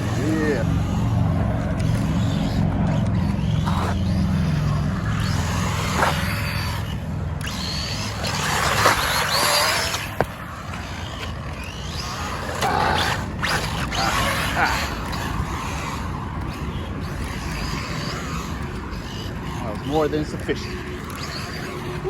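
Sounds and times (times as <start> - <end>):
electric motor whining in bursts: 0.0 - 22.0.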